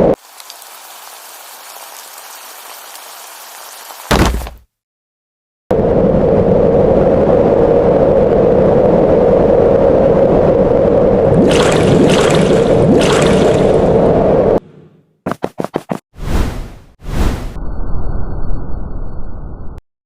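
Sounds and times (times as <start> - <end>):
rushing water: 0.0 - 4.1, 11.4 - 14.0.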